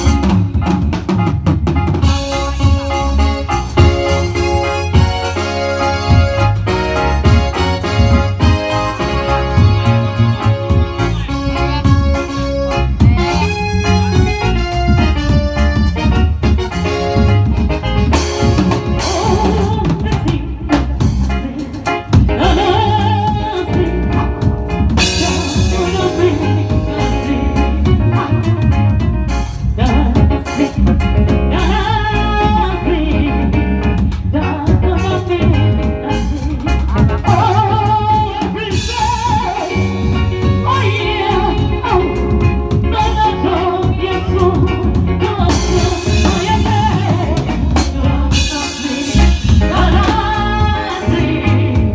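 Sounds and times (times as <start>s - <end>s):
drum rimshots: 0.0s - 22.6s
band playing: 0.0s - 51.9s.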